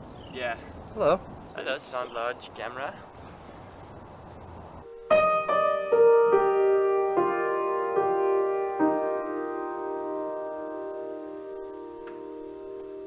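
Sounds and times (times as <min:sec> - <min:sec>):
slow piano notes ringing: 0:04.8 - 0:13.0.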